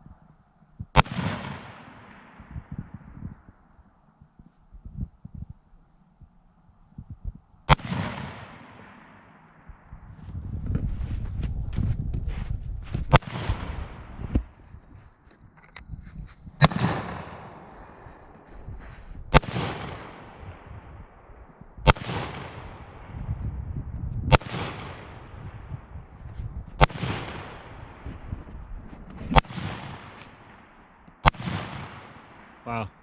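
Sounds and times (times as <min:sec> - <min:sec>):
rifle shots with echo: 0:01.0 - 0:03.0, 0:07.7 - 0:10.0, 0:13.1 - 0:14.5, 0:16.6 - 0:18.4, 0:19.3 - 0:23.2, 0:24.3 - 0:25.9, 0:26.8 - 0:28.1, 0:29.3 - 0:32.6.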